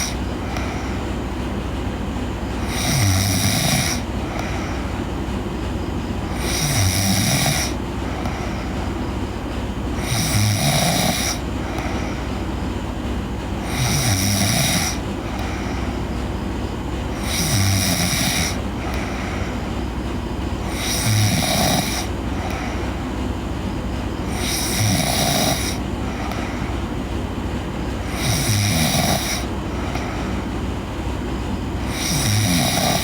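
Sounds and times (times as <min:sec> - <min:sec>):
girl snoring: 0:00.0 - 0:00.8, 0:02.6 - 0:04.8, 0:06.3 - 0:08.6, 0:10.0 - 0:12.2, 0:13.6 - 0:15.6, 0:17.2 - 0:19.5, 0:20.6 - 0:22.8, 0:24.3 - 0:26.7, 0:28.0 - 0:30.4, 0:31.8 - 0:33.0
constant low hum: 0:00.0 - 0:33.0.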